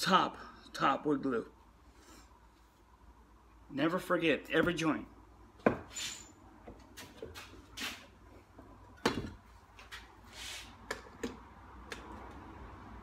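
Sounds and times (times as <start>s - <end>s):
short scraping rustles: 5.9s - 6.4s, 7.4s - 8.1s, 9.9s - 10.8s.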